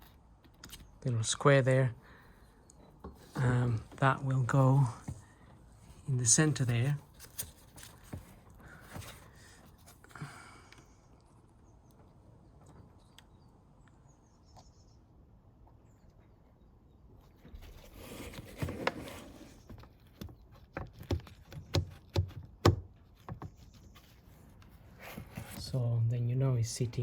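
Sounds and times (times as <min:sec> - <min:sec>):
rustling: 0:03.0 - 0:10.1, 0:23.0 - 0:25.8
sharp knocks on plastic: 0:20.8 - 0:23.5.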